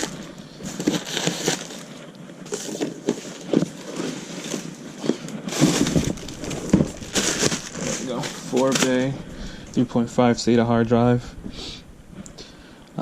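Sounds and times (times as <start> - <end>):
cardboard box rustling: 0.0 - 9.2.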